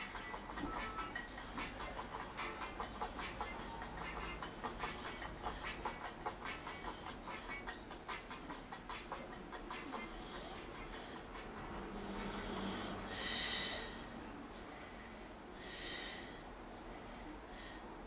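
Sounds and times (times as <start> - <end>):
loud airy breaths: 3.0 - 7.7, 9.9 - 18.0.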